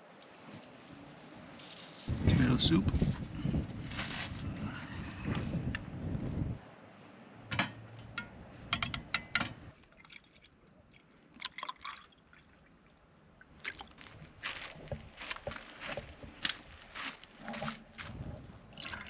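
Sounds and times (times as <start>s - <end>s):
liquid pouring and splashing: 9.8s - 12.8s, 18.7s - 19.0s.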